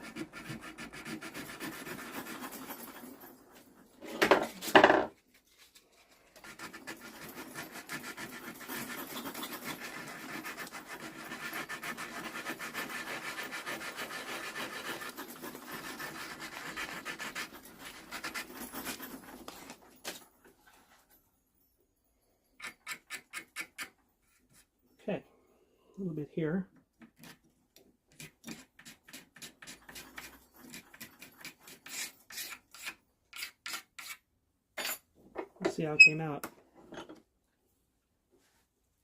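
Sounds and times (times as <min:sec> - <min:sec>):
sandpaper rubbing on wood: 0:00.0 - 0:03.2, 0:06.4 - 0:19.3.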